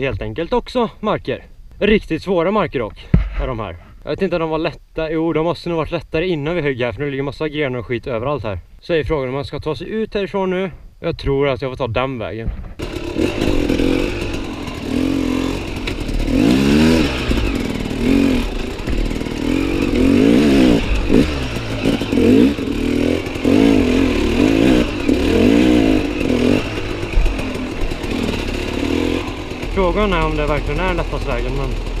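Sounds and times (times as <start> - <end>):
motorcycle engine revving: 12.7 - 32.0.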